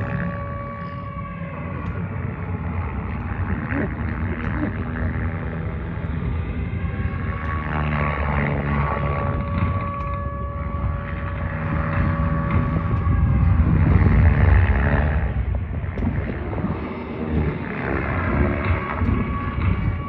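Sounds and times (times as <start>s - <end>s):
helicopter rotor noise: 0.0s - 20.0s
model helicopter motor whine: 0.0s - 20.0s.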